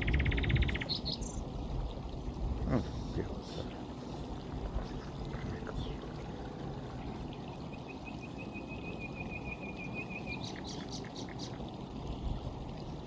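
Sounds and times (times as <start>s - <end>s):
stream flowing over rocks: 0.9s - 8.7s.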